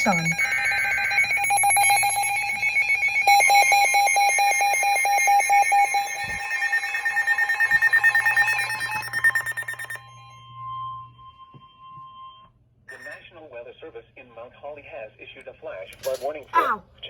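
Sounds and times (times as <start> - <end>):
rapid electronic alarm beeping: 0.0 - 13.2
faint steady tone: 7.7 - 13.2.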